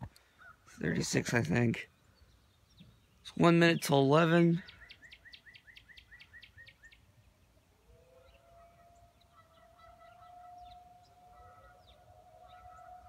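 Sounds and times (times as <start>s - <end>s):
bird chirping rapidly: 2.1s - 7.1s
distant warning siren: 7.7s - 13.0s.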